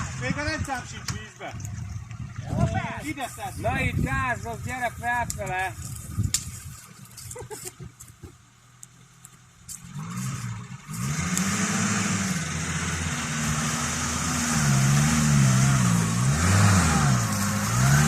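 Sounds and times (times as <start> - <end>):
engine revving hard: 9.9 - 18.0.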